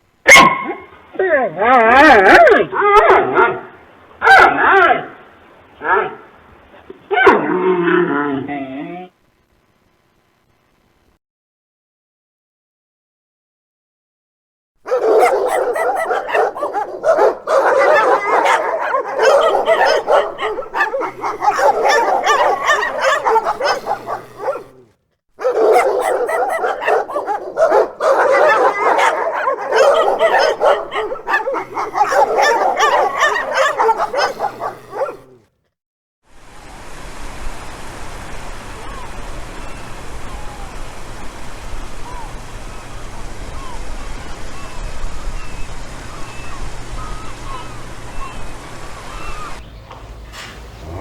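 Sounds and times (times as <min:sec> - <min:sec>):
dog barking and yipping: 0:00.3 - 0:00.9, 0:04.2 - 0:04.7, 0:14.9 - 0:24.8, 0:25.4 - 0:35.4.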